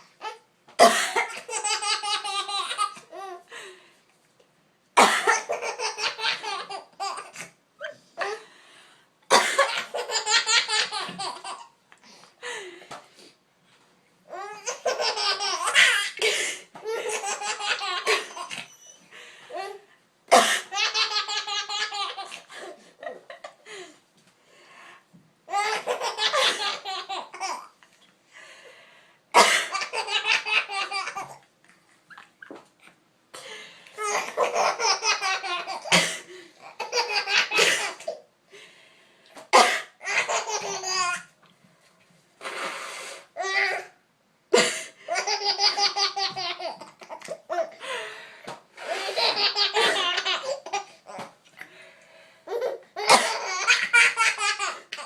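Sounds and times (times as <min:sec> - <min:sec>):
baby laughing: 0:09.6 - 0:11.8, 0:14.3 - 0:18.9, 0:25.5 - 0:27.7, 0:34.0 - 0:36.0, 0:40.0 - 0:41.3, 0:45.1 - 0:47.8, 0:48.8 - 0:51.3, 0:52.5 - 0:55.0.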